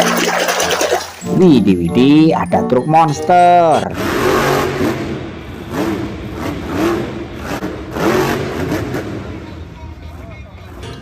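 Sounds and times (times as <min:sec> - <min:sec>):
engine revving: 0:03.9 - 0:10.8.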